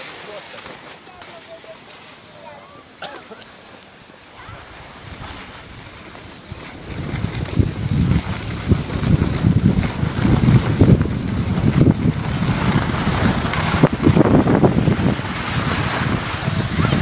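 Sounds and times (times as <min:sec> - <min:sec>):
wind buffeting microphone: 0:04.4 - 0:17.0.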